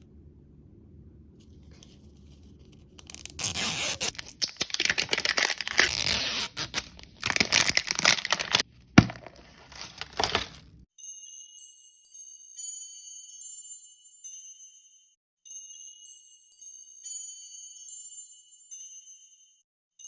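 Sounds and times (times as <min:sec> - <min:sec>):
packaging torn and crinkled: 0:03.0 - 0:10.8.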